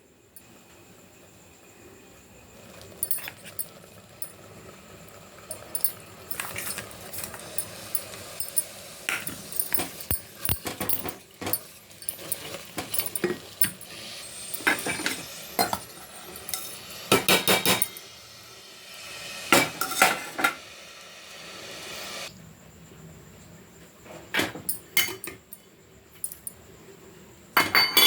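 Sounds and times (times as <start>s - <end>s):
metal utensils clinking on dishes: 2.9s - 4.4s, 5.5s - 18.1s, 24.4s - 25.6s, 26.2s - 26.5s, 27.6s - 28.0s.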